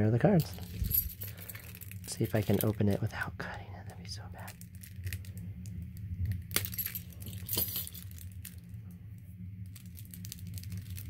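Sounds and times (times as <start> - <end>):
low steady hum: 0.0 - 11.0
plastic wrapping crinkling: 0.4 - 3.1, 4.4 - 8.9, 9.6 - 11.0.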